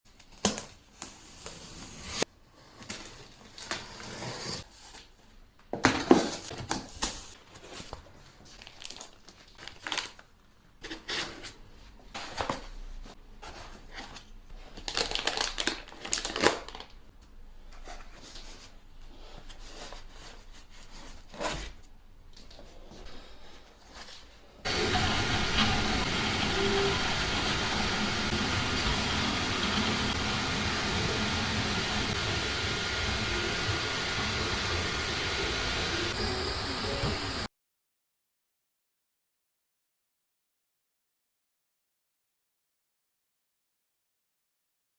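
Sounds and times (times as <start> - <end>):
packaging crinkling and rustling: 6.1 - 17.1.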